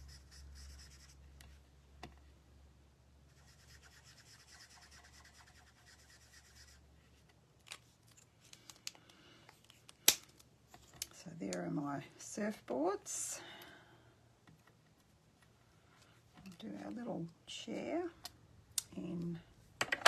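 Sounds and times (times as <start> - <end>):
colouring strokes on cardstock: 0.0 - 1.2, 3.3 - 6.8.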